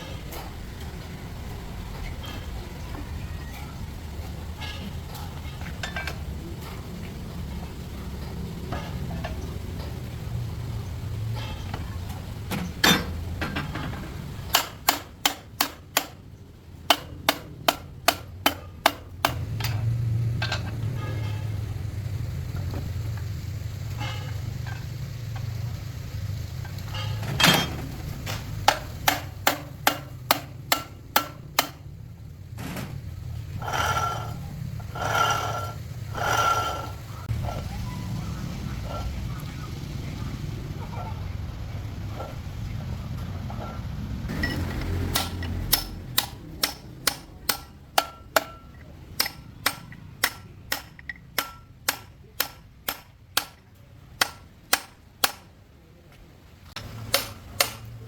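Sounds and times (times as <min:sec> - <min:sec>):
steady low hum: 0:00.0 - 0:58.0
hammer striking metal: 0:12.6 - 0:16.2, 0:16.9 - 0:21.4, 0:26.9 - 0:31.9, 0:44.3 - 0:55.5, 0:56.8 - 0:58.0.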